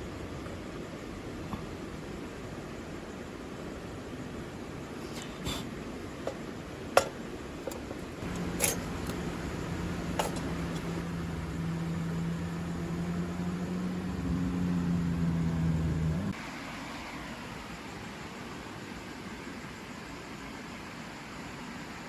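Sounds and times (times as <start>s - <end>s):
small motor humming: 8.2s - 16.4s.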